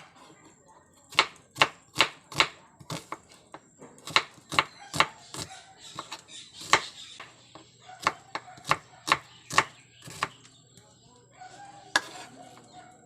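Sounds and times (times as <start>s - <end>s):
knife chopping on cutting board: 4.0s - 7.3s.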